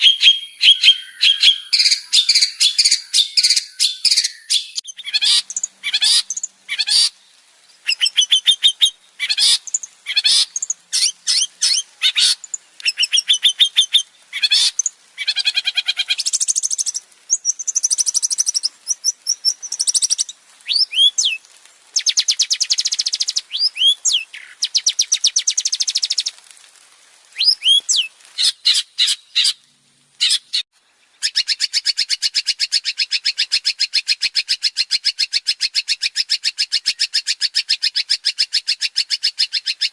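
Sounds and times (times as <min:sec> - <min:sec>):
shrike singing: 0:00.0 - 0:07.1.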